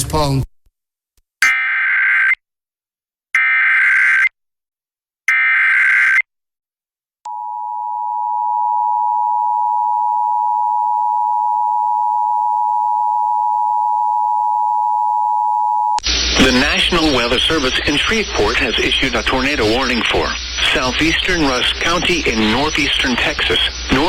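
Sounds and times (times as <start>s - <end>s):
buzzing data screech: 1.4s - 2.4s, 3.4s - 4.3s, 5.3s - 6.2s, 16.0s - 24.0s.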